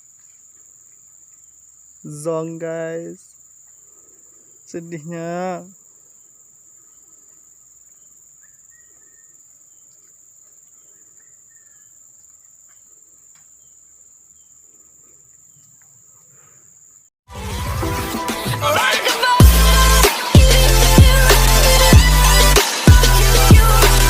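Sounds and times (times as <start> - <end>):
faint bird chirps: 0.0 - 17.1
insects trilling: 0.0 - 17.1.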